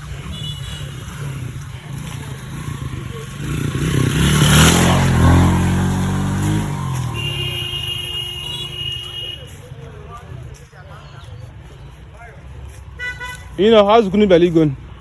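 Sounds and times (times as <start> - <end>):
small engine passing by: 0.0 - 8.2.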